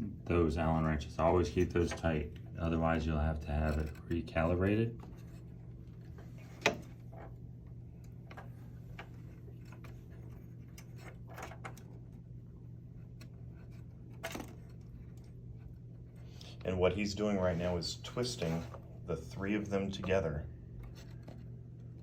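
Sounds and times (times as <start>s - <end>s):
steady low hum: 0.0s - 22.0s
clicks and knocks of handling parts: 5.0s - 12.2s.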